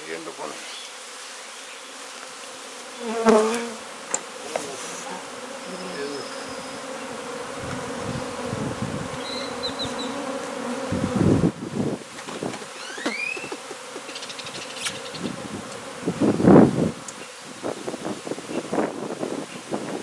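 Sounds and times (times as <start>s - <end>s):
bees buzzing: 1.7s - 20.0s
dull knocks: 12.1s - 14.2s.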